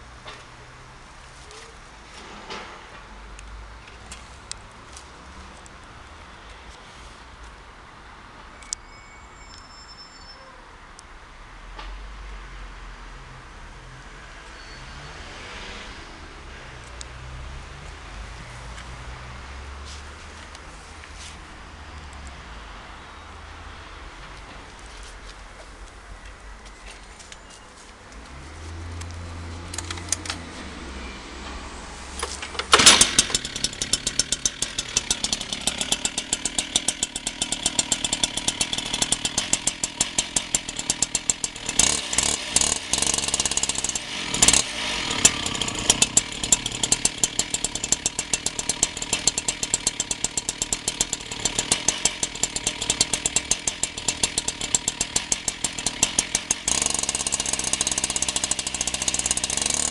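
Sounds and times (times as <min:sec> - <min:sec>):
cut-off saw engine popping: 0:29.1 - 0:59.9.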